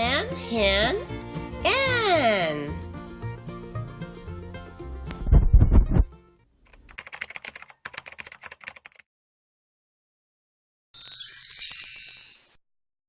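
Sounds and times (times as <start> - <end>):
light typing clicks: 6.7 - 9.0
high shimmering chime: 11.0 - 12.6.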